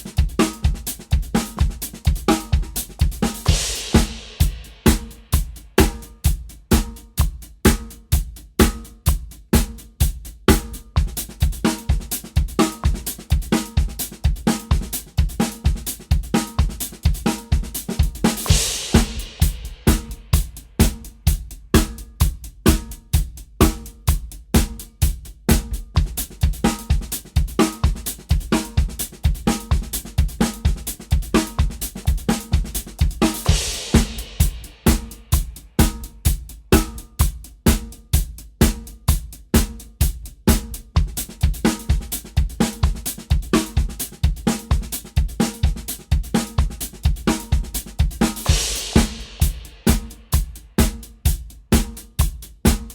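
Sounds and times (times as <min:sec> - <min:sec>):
drum kit groove: 0:00.0 - 0:52.9
bass drum strokes: 0:18.2 - 0:24.3, 0:32.5 - 0:37.8.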